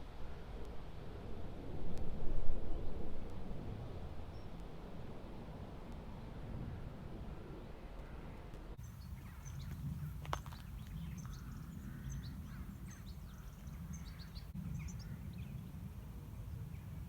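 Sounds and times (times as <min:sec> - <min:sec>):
steady low rumble: 0:00.0 - 0:17.0
high bird chirps: 0:08.8 - 0:15.6.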